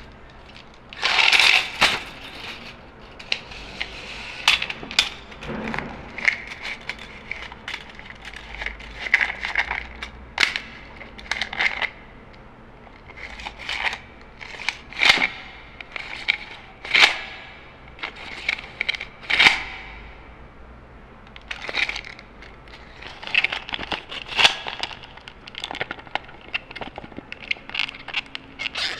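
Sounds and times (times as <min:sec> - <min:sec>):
tape measure clicking and rattling: 0:00.3 - 0:12.0.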